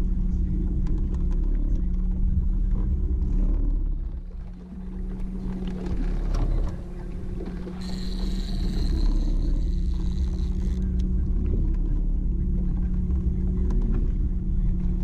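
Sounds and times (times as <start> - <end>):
boat motor rumbling: 0.0 - 15.0
high steady tone: 7.6 - 11.0.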